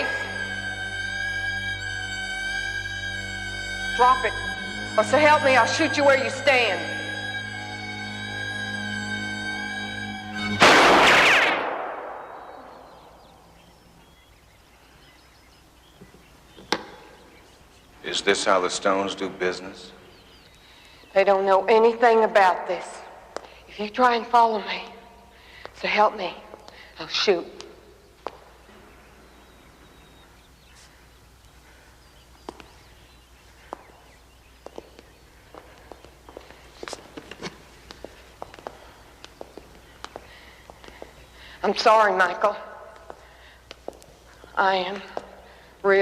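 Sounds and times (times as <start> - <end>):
sudden loud blast: 10.5 - 12.7
faint bird chirps: 12.1 - 18.5, 19.3 - 21.4, 26.8 - 36.6.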